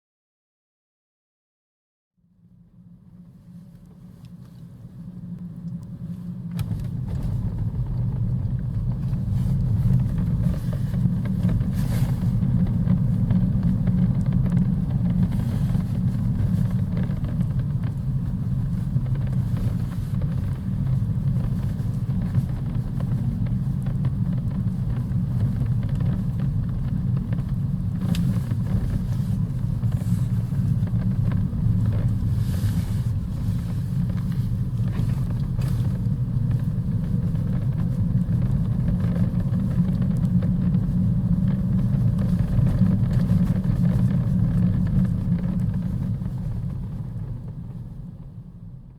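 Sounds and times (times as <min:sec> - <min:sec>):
car cabin rumble while driving: 0:02.4 - 0:48.9.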